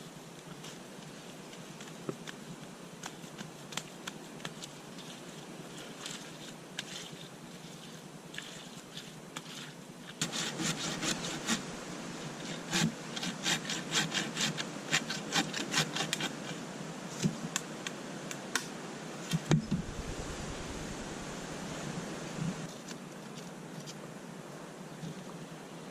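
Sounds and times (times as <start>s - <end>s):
hand tool rasping strokes: 10.2s - 11.7s, 12.4s - 16.6s.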